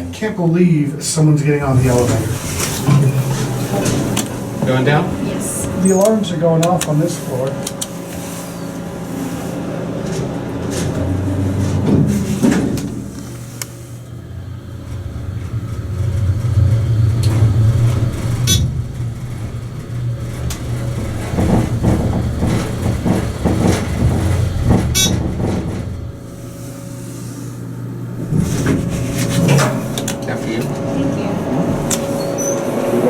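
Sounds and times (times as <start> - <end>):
elevator low hum: 0.0 - 33.0
sharp clicks and rattles: 14.8 - 26.2.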